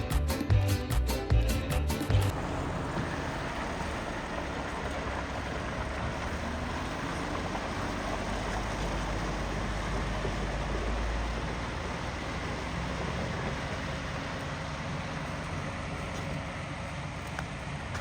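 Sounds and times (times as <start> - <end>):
vehicle engine rumble: 0.0 - 18.0.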